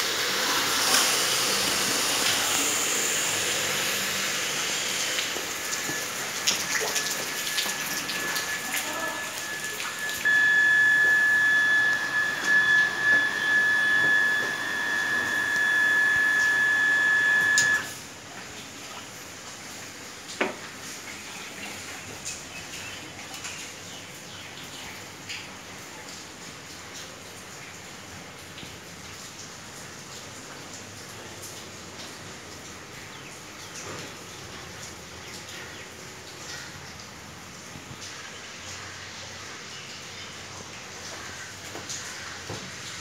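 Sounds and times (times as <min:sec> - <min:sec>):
water rushing through filter: 0:00.0 - 0:20.1
high-pitched whine: 0:06.9 - 0:18.0.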